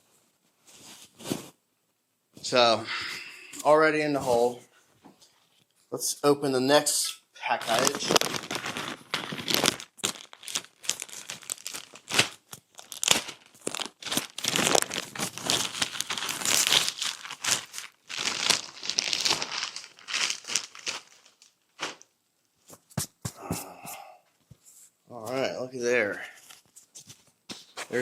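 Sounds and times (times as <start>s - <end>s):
packaging crinkling and tearing: 7.6s - 22.1s.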